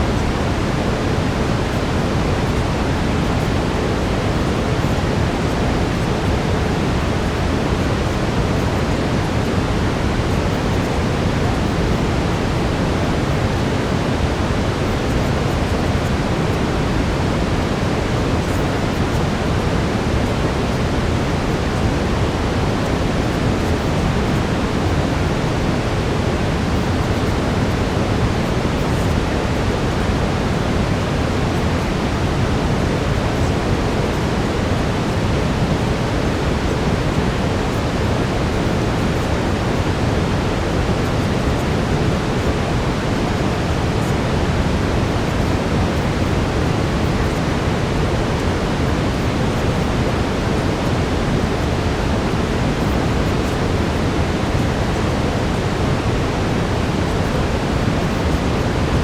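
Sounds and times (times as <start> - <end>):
deep steady brown noise hiss: 0.0 - 59.0.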